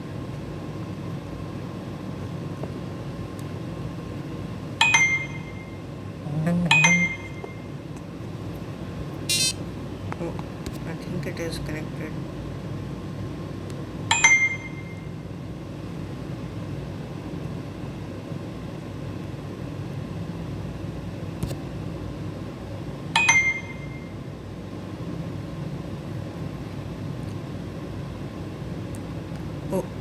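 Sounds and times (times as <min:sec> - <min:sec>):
low background hum: 0:00.0 - 0:30.0
bell-like electronic chimes: 0:04.8 - 0:05.8, 0:06.7 - 0:07.7, 0:14.1 - 0:15.1, 0:23.2 - 0:24.1.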